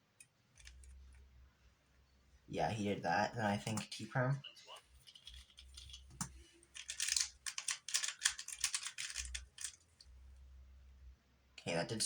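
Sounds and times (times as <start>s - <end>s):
puzzle cube clicking: 5.1s - 9.8s.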